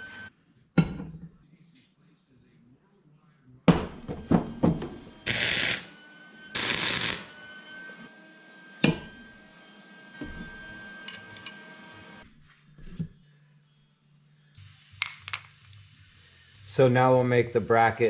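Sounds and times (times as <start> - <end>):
thin steady whine: 5.0 - 12.2
welding crackling hiss: 5.3 - 6.0, 6.6 - 7.4, 14.6 - 17.8.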